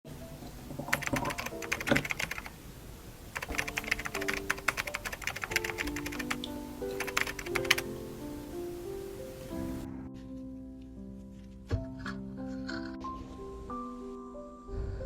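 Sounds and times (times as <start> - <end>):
soft piano-like music: 0.1 - 15.0
keyboard typing clicks: 0.9 - 2.5, 3.4 - 7.9.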